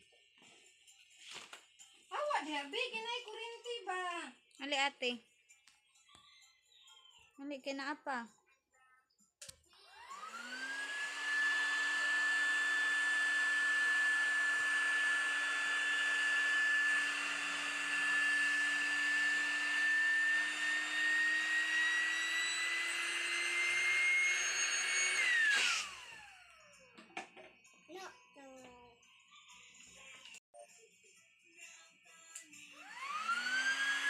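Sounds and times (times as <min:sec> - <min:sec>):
electric air pump motor whine: 0:09.8 - 0:26.8, 0:32.8 - 0:34.0.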